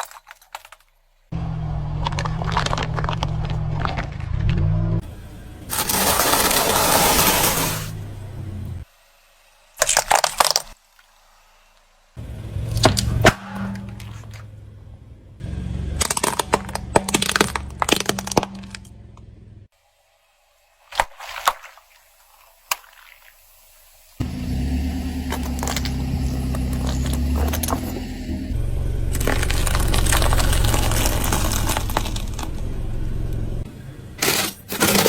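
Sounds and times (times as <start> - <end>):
brittle cracking and crunching: 0.0 - 1.0, 1.8 - 4.7, 9.8 - 10.8, 16.0 - 18.9, 25.2 - 28.1, 29.1 - 32.6.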